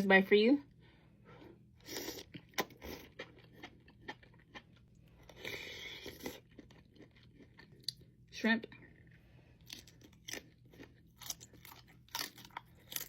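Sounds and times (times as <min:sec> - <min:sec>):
chewing seafood: 0:01.8 - 0:08.3, 0:08.9 - 0:13.0
crunching: 0:09.6 - 0:13.0.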